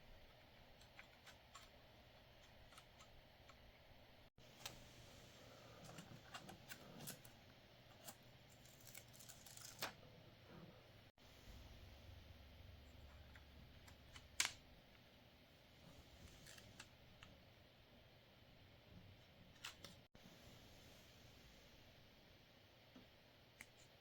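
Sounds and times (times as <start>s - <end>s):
faint clicks and handling noise: 0.2s - 10.7s, 12.9s - 15.1s, 15.8s - 17.4s, 19.0s - 20.1s, 22.8s - 24.0s.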